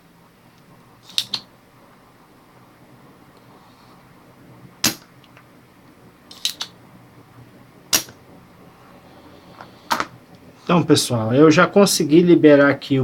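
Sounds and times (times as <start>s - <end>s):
solder sucker snapping: 1.0s - 1.5s, 6.3s - 6.8s.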